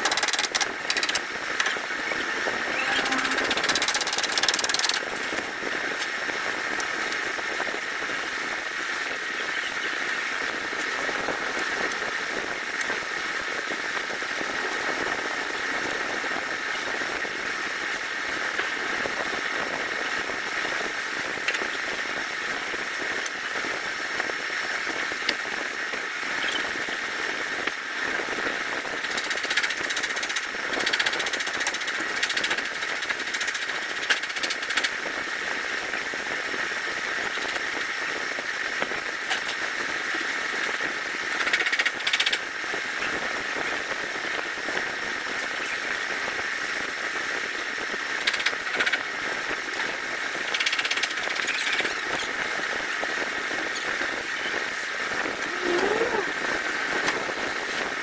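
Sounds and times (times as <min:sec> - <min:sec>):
mechanical running noise with hiss: 0:00.0 - 0:58.0.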